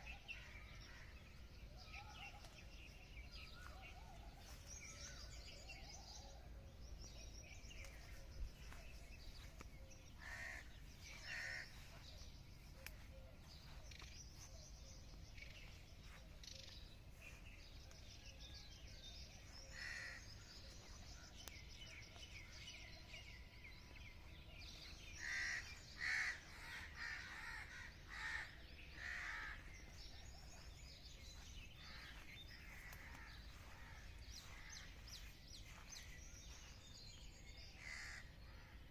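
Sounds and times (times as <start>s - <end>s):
bird calls: 0.0s - 38.9s.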